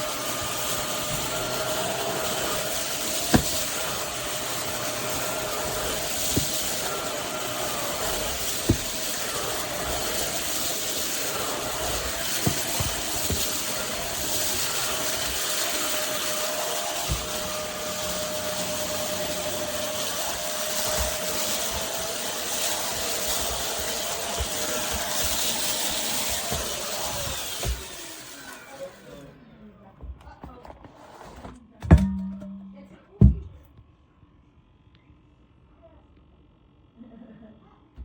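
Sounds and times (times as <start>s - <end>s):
vacuum cleaner motor whine: 0.0s - 29.6s
vacuum head knocking on floor: 0.5s - 28.0s.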